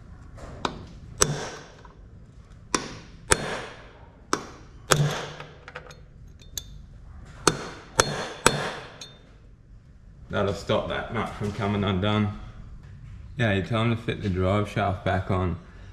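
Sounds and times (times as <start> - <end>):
hammer striking pin punch: 0.6 - 2.0, 2.7 - 6.7, 7.4 - 9.2.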